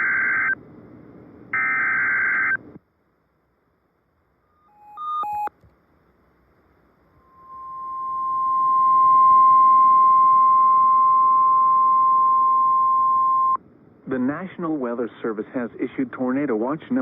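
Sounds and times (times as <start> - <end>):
steady pure alarm tone: 4.4 - 5.5, 7.1 - 13.6
short electronic beeps: 4.6 - 5.5, 7.2 - 13.6.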